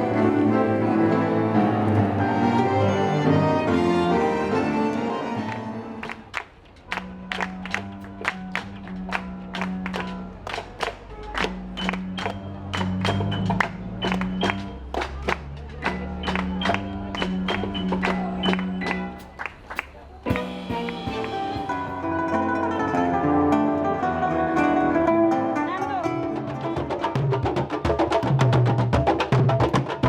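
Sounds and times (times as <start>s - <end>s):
instrumental background music: 15.7s - 27.1s.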